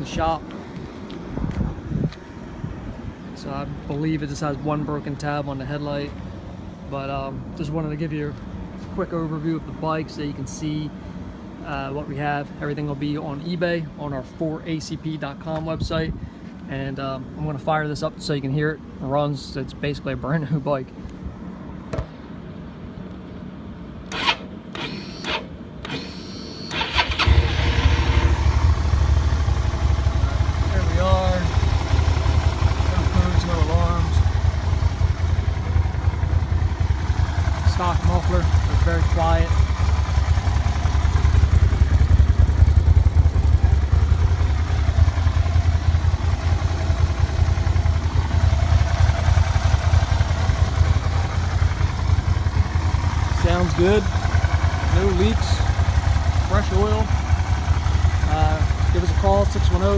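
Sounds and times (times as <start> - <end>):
starter clicks and whirs: 24.0 - 59.9
motorcycle engine idling: 26.9 - 59.9.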